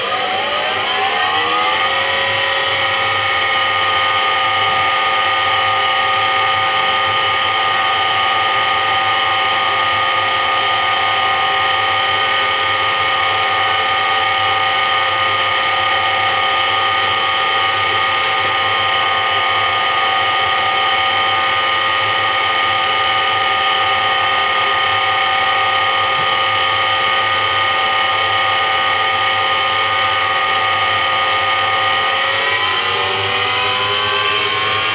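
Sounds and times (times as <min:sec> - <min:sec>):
washing machine drum spinning: 0:00.0 - 0:31.4
humming whine of drum bearing: 0:00.0 - 0:34.9.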